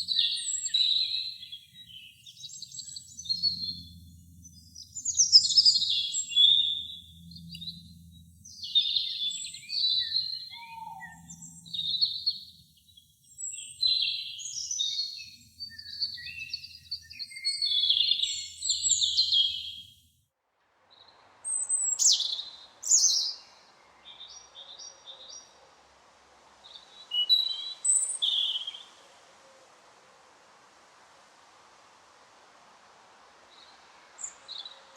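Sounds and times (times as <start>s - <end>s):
robin singing: 0.0s - 19.9s, 21.5s - 25.5s, 26.6s - 29.0s, 33.5s - 34.9s
background hiss: 0.0s - 34.9s
sharp falling bird calls: 10.0s - 11.6s.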